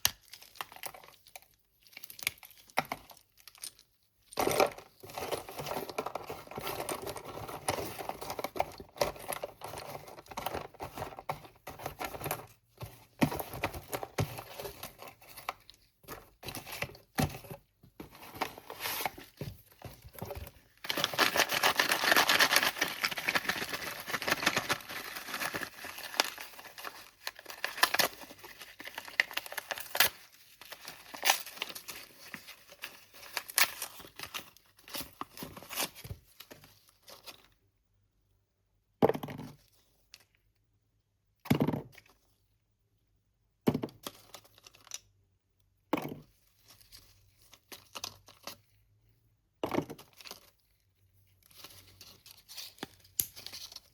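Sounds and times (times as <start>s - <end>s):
packaging crinkling and tearing: 20.1s - 36.2s.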